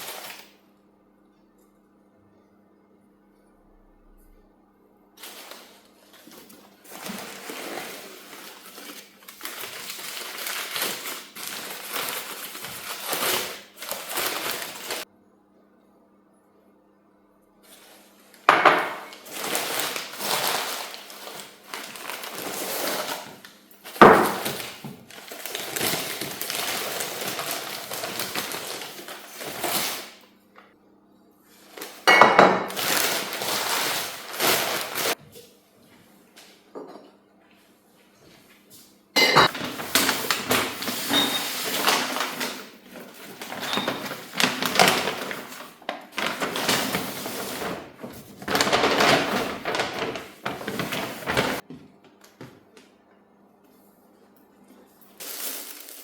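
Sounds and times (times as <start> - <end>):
crockery and cutlery clinking: 39.2 - 39.6.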